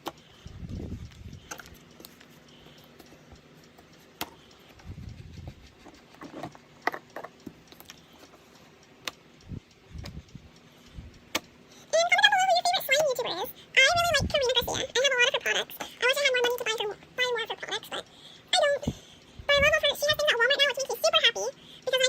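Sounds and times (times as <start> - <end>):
small clicks and pops: 0.0 - 13.2.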